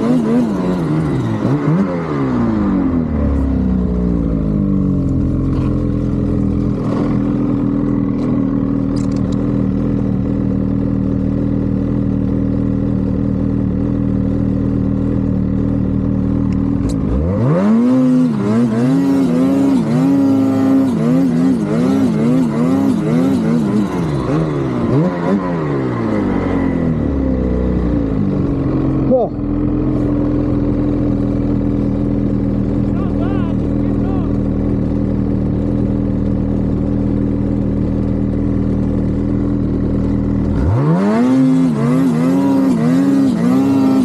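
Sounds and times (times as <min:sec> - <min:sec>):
turbocharged engine revving: 0:00.0 - 0:04.9, 0:16.8 - 0:30.6, 0:40.0 - 0:44.0.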